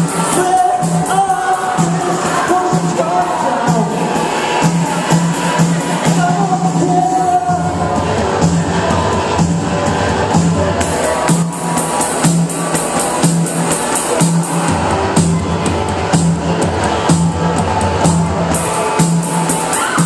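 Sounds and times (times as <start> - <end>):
drum beat: 0.0 - 20.0
pulsing bass line: 0.0 - 20.0
person singing: 0.1 - 9.2.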